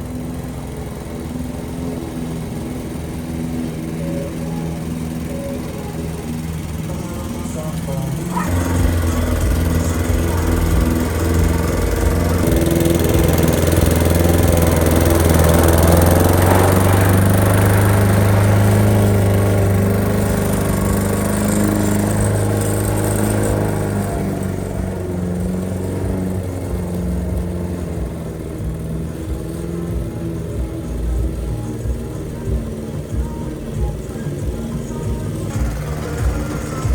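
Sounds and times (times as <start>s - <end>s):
lawn mower engine running: 0.0s - 36.9s.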